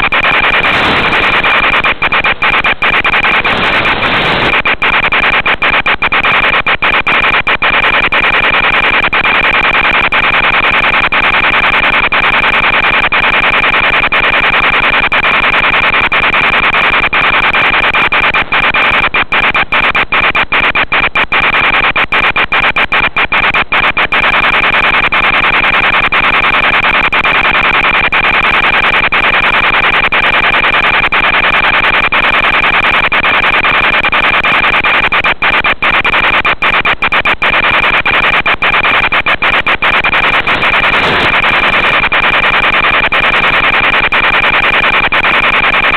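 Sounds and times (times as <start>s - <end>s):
steady radio hiss: 0.0s - 8.0s, 37.6s - 43.0s
constant high whine: 0.0s - 45.9s.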